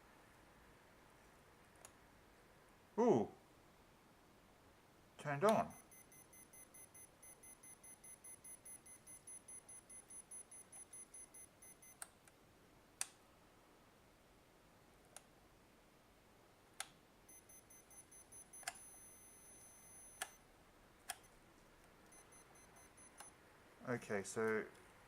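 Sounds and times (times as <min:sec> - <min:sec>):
multimeter beeping: 0:05.6 - 0:12.0, 0:17.3 - 0:20.4, 0:22.1 - 0:23.4.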